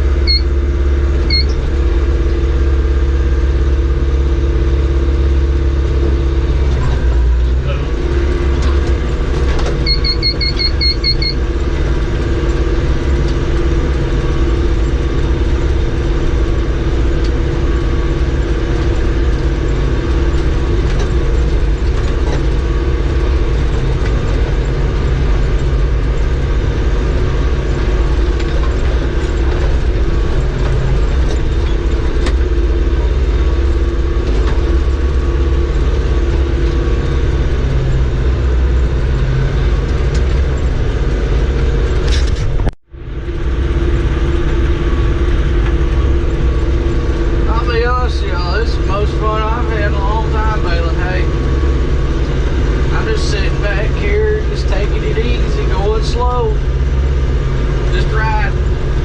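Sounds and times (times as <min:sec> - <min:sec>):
tractor engine droning: 0:00.0 - 0:59.0
short electronic beeps: 0:00.2 - 0:00.5, 0:01.2 - 0:01.6, 0:09.8 - 0:11.4.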